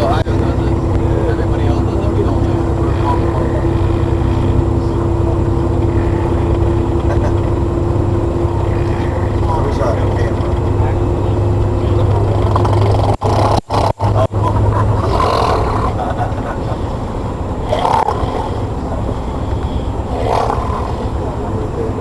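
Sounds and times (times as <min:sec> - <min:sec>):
bus engine drone: 0:00.0 - 0:22.0
man snoring loudly: 0:12.4 - 0:14.2, 0:15.0 - 0:16.0, 0:17.6 - 0:21.2.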